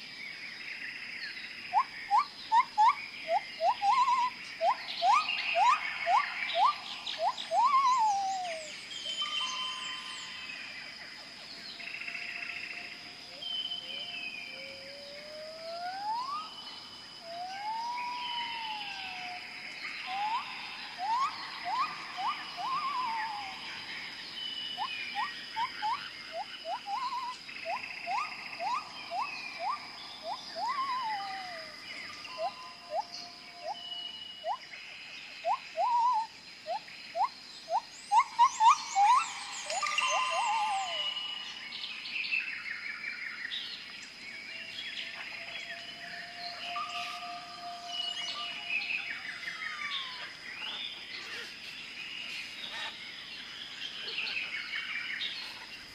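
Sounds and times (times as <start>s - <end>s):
birds whistling and calling: 1.2s - 10.8s, 11.6s - 55.7s
high-pitched insect drone: 12.0s - 34.8s, 35.4s - 41.8s.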